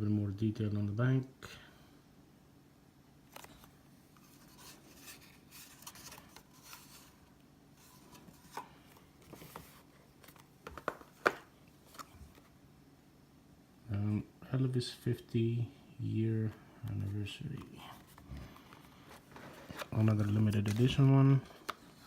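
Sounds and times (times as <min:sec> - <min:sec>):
rustling: 0:03.3 - 0:11.2.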